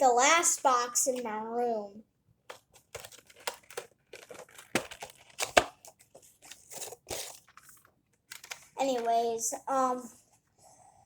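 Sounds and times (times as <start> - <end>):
packaging crinkling: 2.5 - 8.7.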